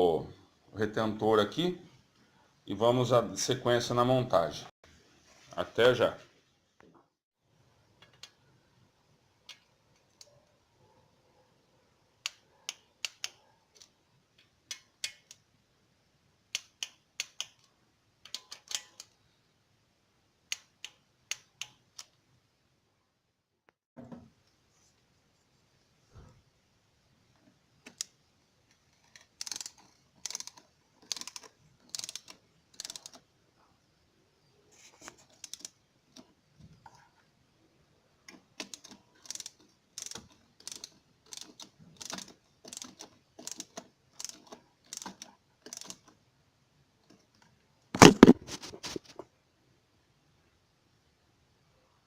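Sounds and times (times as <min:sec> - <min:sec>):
ratchet wrench clicking: 0:29.1 - 0:33.2, 0:35.4 - 0:35.8, 0:38.6 - 0:46.1.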